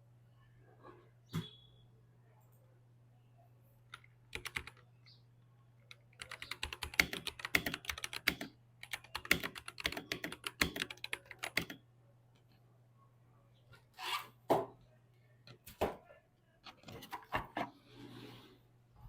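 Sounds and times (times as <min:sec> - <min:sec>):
mechanical keyboard typing: 0:03.9 - 0:04.8, 0:05.9 - 0:11.8.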